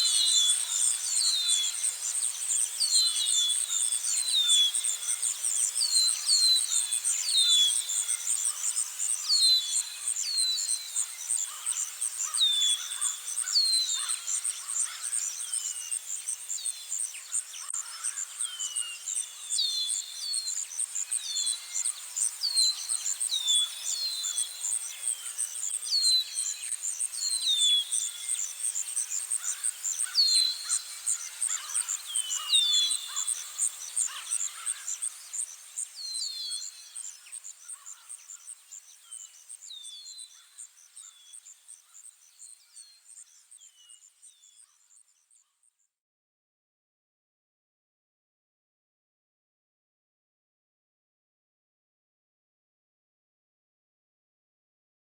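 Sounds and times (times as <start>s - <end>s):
insect trill: 9.8s - 44.9s.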